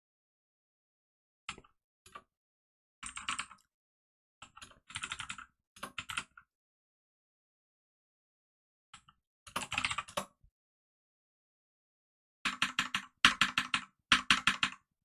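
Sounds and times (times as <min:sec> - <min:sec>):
computer keyboard typing: 0:03.0 - 0:03.7, 0:04.5 - 0:06.3, 0:09.5 - 0:10.3, 0:12.5 - 0:14.9.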